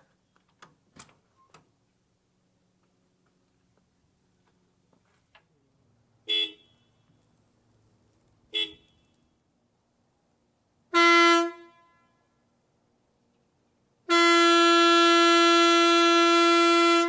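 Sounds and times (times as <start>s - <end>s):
truck horn: 6.3s - 7.1s, 8.5s - 9.2s, 10.9s - 12.3s, 14.1s - 17.0s.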